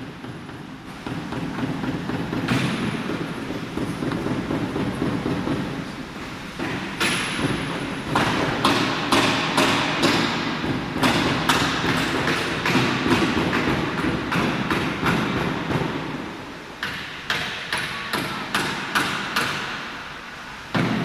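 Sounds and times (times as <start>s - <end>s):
sharp knocks: 0.2s - 5.8s, 6.6s - 16.2s, 20.7s - 21.0s.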